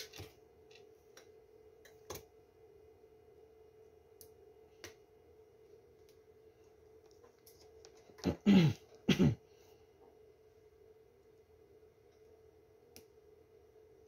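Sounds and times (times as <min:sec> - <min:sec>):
low steady hum: 0:00.0 - 0:14.0
person clearing throat: 0:08.2 - 0:09.4.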